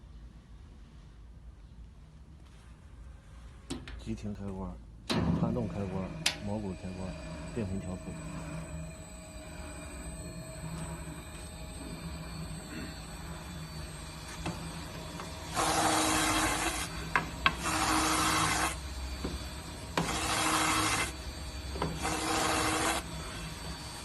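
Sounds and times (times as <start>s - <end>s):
spindle sander humming: 6.5s - 24.0s
loud rasping sanding: 15.4s - 18.9s, 19.6s - 21.2s, 21.8s - 24.0s.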